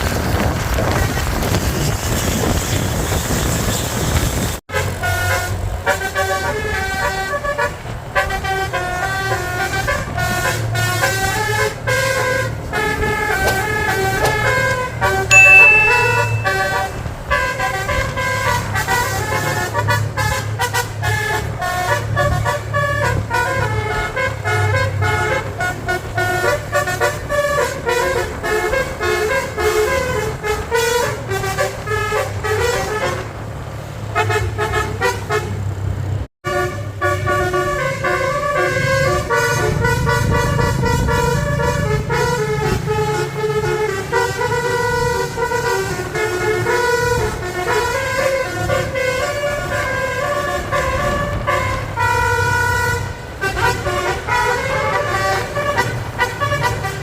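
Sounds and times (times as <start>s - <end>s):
bus engine running: 0.0s - 15.3s, 16.9s - 57.0s
musical air horn tooting: 4.7s - 14.1s, 15.3s - 19.6s, 36.5s - 57.0s.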